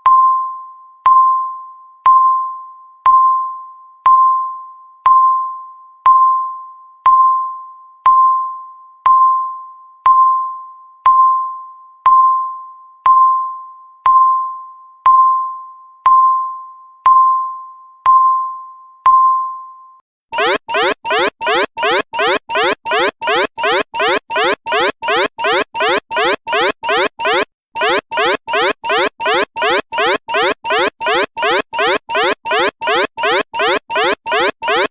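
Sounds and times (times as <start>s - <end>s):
countdown timer beeps: 20.4s - 34.9s.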